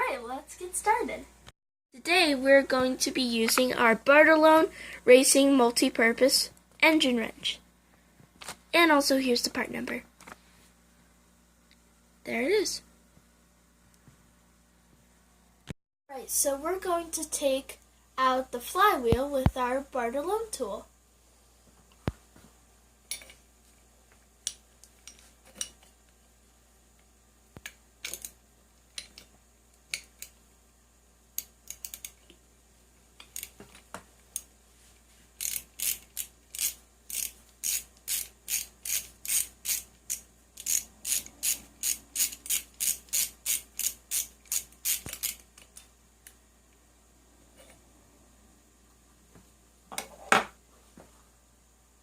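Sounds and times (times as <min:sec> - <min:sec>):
ratchet wrench clicking: 0:31.4 - 0:32.2, 0:35.4 - 0:45.7.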